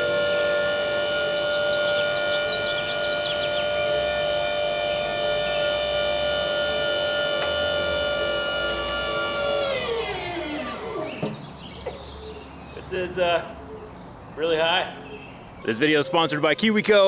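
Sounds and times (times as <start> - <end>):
steady siren-like tone: 0.0 - 11.6.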